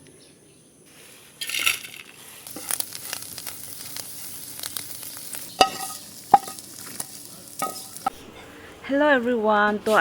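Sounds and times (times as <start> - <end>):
food sizzling in a pan: 1.4 - 8.4
utensil scraping pan: 5.4 - 8.5
utensil clanking against pan: 5.6 - 8.2.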